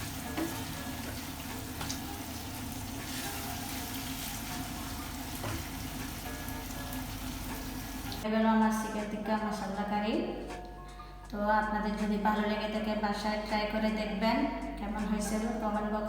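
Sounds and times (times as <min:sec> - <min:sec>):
curry sizzling in a pan: 0:00.0 - 0:08.2.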